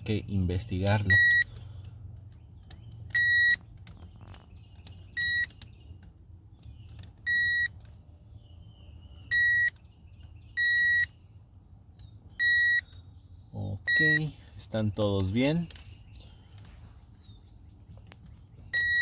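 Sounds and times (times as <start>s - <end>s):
circuit tester beeps: 1.0s - 1.5s, 3.1s - 3.7s, 5.1s - 5.6s, 7.2s - 7.8s, 9.3s - 9.8s, 10.5s - 11.1s, 12.4s - 12.9s, 13.8s - 14.3s, 18.7s - 19.0s.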